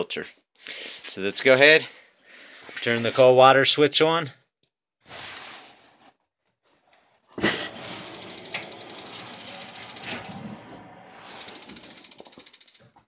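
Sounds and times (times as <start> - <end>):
spark igniter clicking rapidly: 11.3 - 12.9.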